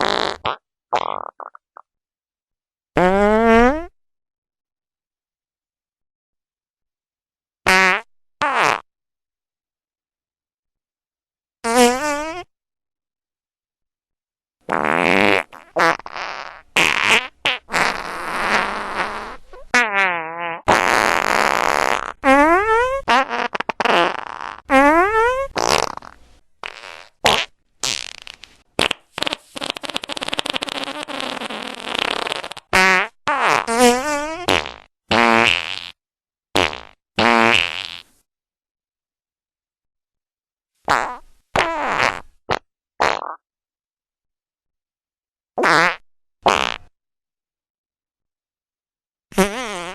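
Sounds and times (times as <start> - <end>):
fart sound effects: 0.0 - 1.8, 3.0 - 4.0, 7.7 - 8.9, 11.6 - 12.5, 14.7 - 36.0, 36.6 - 38.1, 40.9 - 43.4, 45.6 - 46.9, 49.3 - 49.9.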